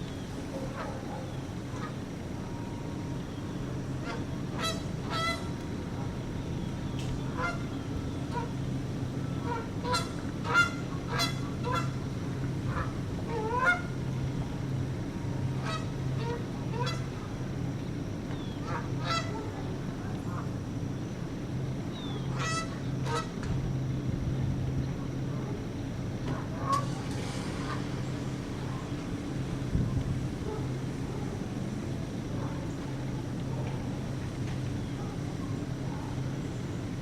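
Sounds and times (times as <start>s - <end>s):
low hum: 0.0s - 37.0s
goose honking: 4.0s - 5.6s, 7.3s - 7.7s, 9.4s - 12.0s, 12.7s - 14.0s, 15.6s - 17.3s, 18.6s - 19.5s, 22.3s - 23.4s, 26.3s - 28.9s.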